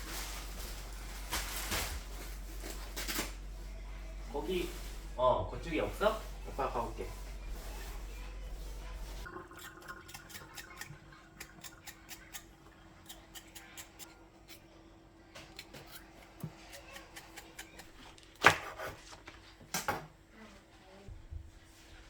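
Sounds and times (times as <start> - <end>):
faint steady hum: 0.0 - 18.4
knife chopping on cutting board: 15.6 - 19.0.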